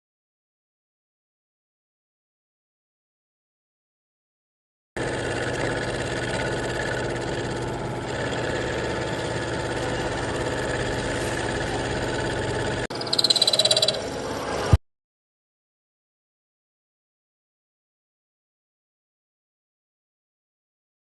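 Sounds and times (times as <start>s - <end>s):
machine tool humming: 5.0s - 14.8s
high-pitched pulsing: 5.4s - 14.8s.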